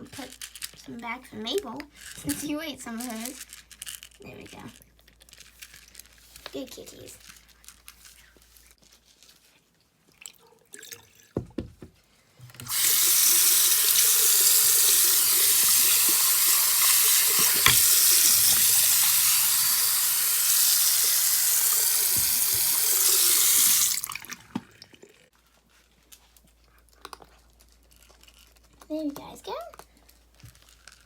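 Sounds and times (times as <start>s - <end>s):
water running into a sink: 12.6s - 25.2s.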